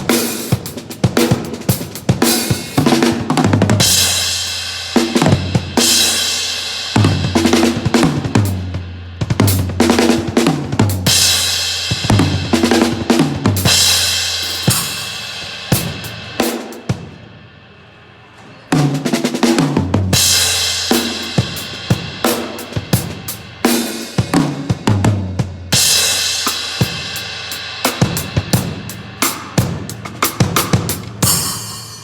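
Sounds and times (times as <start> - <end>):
drum kit playing: 0.0 - 17.5, 18.7 - 32.0
cymbal ringing: 11.0 - 18.2, 25.7 - 32.0.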